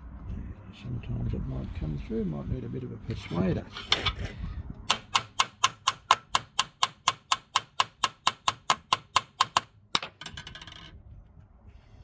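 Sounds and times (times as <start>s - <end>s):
hammer tapping on metal: 4.9s - 10.4s.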